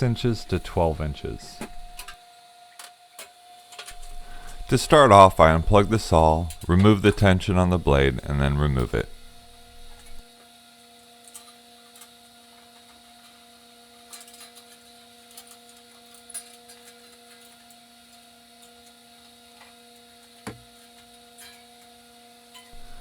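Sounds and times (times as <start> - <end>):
low electrical hum: 0.0 - 2.2, 3.8 - 10.3, 22.8 - 23.0.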